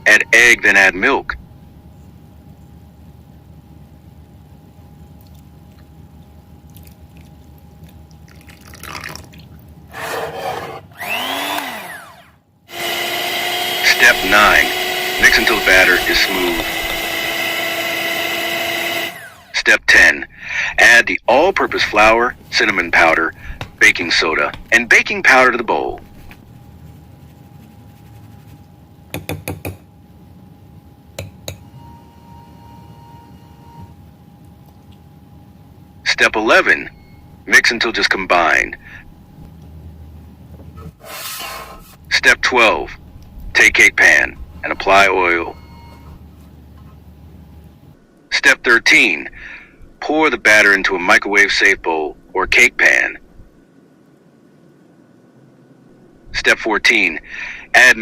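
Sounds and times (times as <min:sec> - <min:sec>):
faint steady hum: 0:00.0 - 0:58.0
liquid splashing and pouring: 0:06.6 - 0:09.8.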